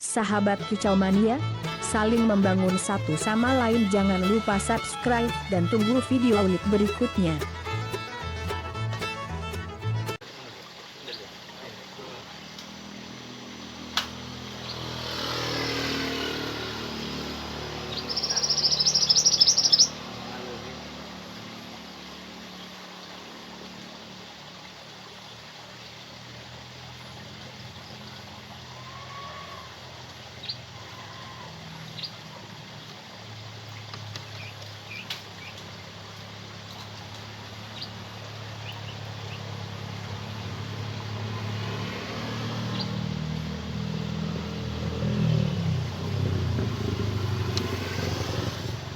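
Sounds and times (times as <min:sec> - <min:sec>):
road traffic: 0:00.0 - 0:48.9
vehicle passing: 0:11.8 - 0:22.7, 0:35.8 - 0:48.9
bulbul calling: 0:17.8 - 0:20.0
faint bird chirps: 0:18.0 - 0:20.0.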